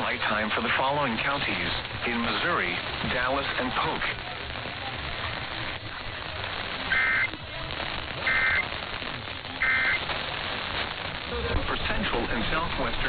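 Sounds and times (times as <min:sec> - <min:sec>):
radio static: 0:00.0 - 0:13.0
buzzy two-tone data bursts: 0:06.4 - 0:07.4, 0:08.0 - 0:11.1.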